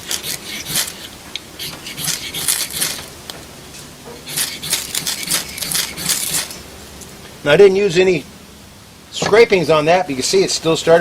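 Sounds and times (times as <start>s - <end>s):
scissors scraping ferro rod: 0.0s - 3.1s, 4.2s - 6.6s.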